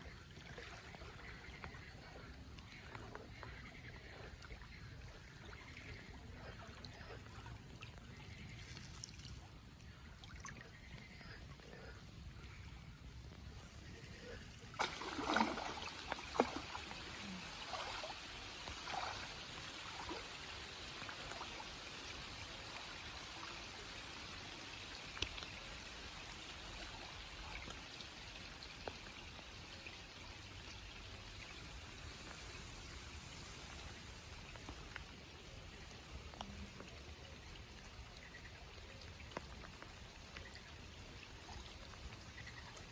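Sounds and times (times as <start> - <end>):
water drips: 0.0 - 11.4, 14.7 - 42.9
water splashes: 0.0 - 11.4, 14.6 - 42.9
rain falling on water: 14.8 - 42.9.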